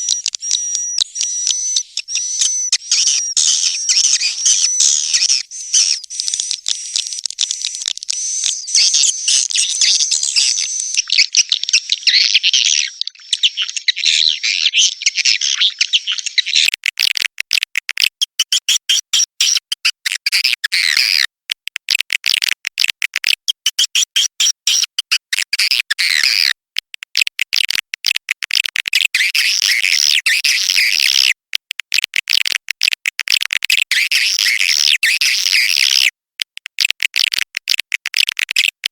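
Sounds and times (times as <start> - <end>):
swiftlets twittering chirps: 0.0 - 13.8.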